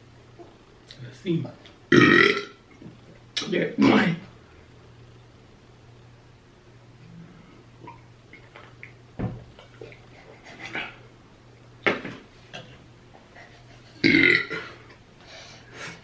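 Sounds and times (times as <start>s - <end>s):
woman burping: 1.9s - 2.6s, 14.0s - 14.9s.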